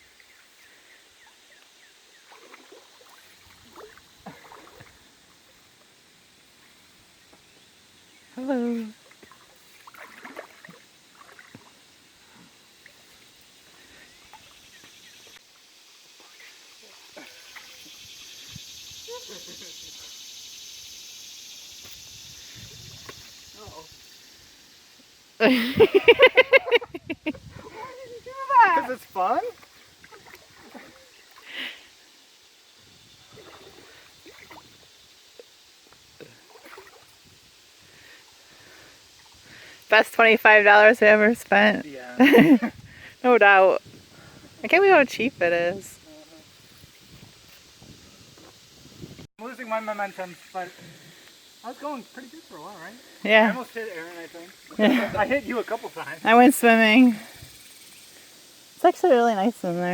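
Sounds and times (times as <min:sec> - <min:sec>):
river water trickling: 0:00.0 - 0:26.7, 0:27.9 - 0:45.4, 0:46.0 - 0:59.9
river water gurgling: 0:02.1 - 0:05.9, 0:09.0 - 0:14.7, 0:33.2 - 0:35.6
short water splashes: 0:02.2 - 0:05.1, 0:09.0 - 0:11.8, 0:28.7 - 0:31.7, 0:33.2 - 0:34.9, 0:36.2 - 0:37.4.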